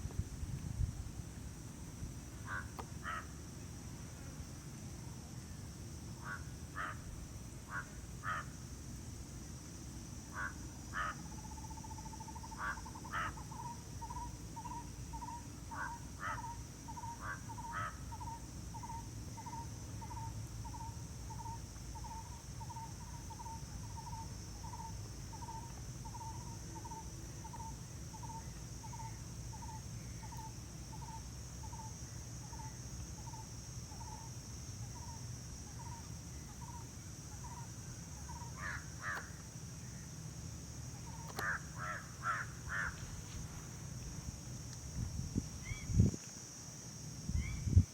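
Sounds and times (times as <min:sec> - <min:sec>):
high insect hiss: 0:00.0 - 0:47.9
crows cawing: 0:02.5 - 0:03.3, 0:06.2 - 0:07.0, 0:07.7 - 0:08.5, 0:10.4 - 0:11.2, 0:12.6 - 0:13.4, 0:15.8 - 0:16.5, 0:17.2 - 0:18.0, 0:38.6 - 0:39.4, 0:41.4 - 0:43.0.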